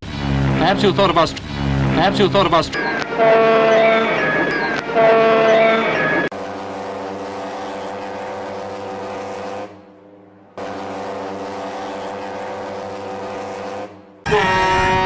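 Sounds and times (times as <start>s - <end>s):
ship's horn blasts: 2.8s - 9.9s, 10.6s - 15.0s.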